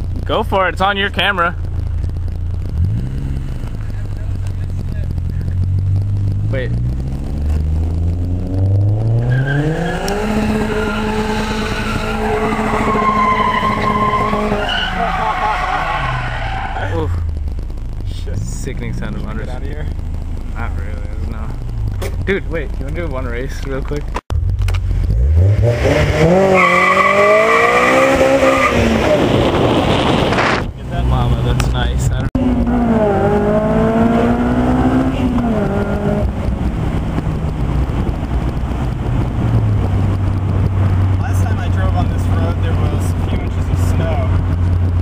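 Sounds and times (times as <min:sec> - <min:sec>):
car engine revving: 0:00.0 - 0:45.0
tyres squealing: 0:09.2 - 0:17.3.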